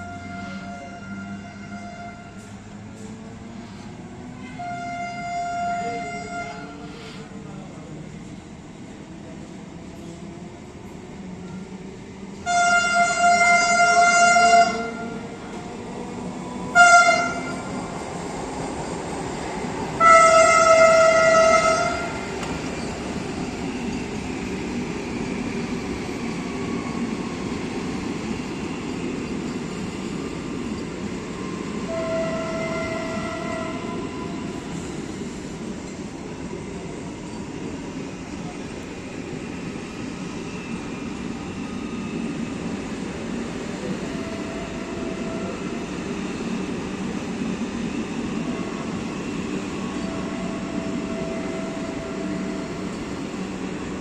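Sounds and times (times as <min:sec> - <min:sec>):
train horn: 0:00.0 - 0:02.5, 0:04.4 - 0:07.2, 0:12.4 - 0:15.3, 0:16.7 - 0:17.7, 0:20.0 - 0:22.3, 0:31.8 - 0:34.6, 0:44.0 - 0:45.7, 0:49.9 - 0:52.8
train rumbling: 0:00.0 - 0:54.0.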